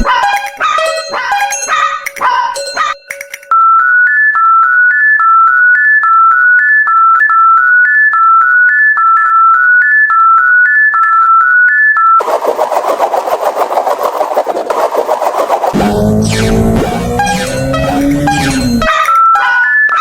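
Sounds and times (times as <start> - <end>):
loud noisy rumble: 15.8 - 18.9
electronic beeping tune: 15.8 - 20.0.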